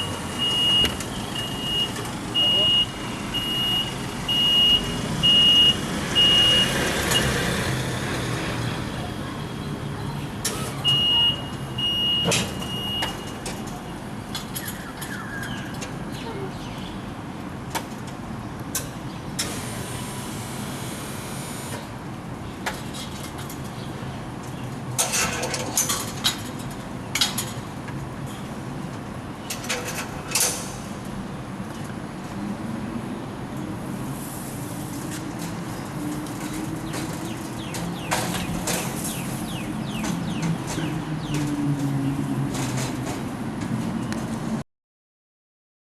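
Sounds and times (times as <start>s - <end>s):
high warning beeps: 0.0s - 7.3s, 10.8s - 13.4s
engine and traffic hum: 0.0s - 44.6s.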